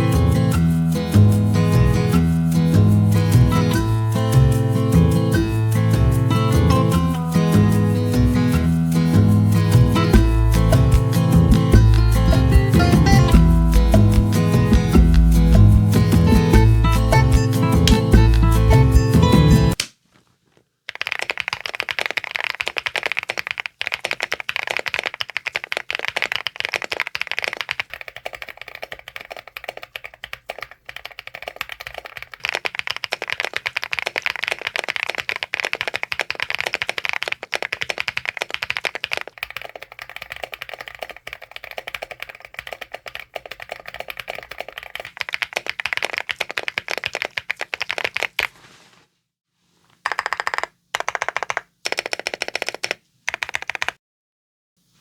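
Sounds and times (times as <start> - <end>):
fast typing on mechanical keyboard: 20.9 - 48.6, 50.0 - 54.0.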